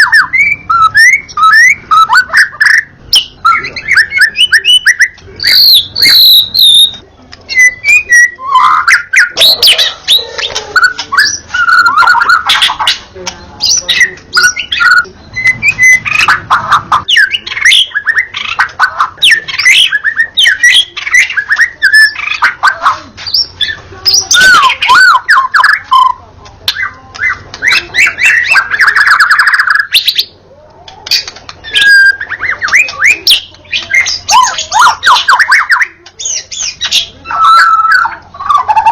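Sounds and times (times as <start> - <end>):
bird singing whistles and clicks: 30.9 - 38.9.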